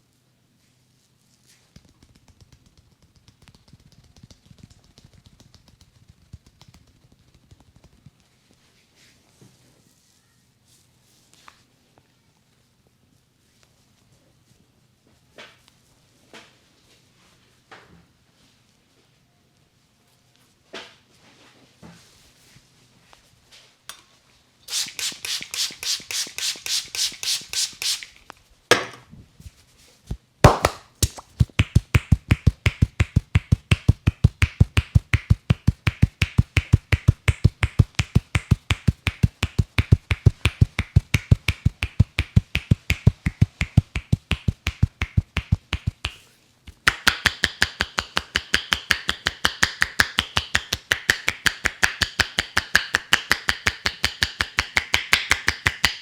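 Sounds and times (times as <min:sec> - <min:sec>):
hands slapping head: 0:24.7 - 0:29.0, 0:30.4 - 0:56.0.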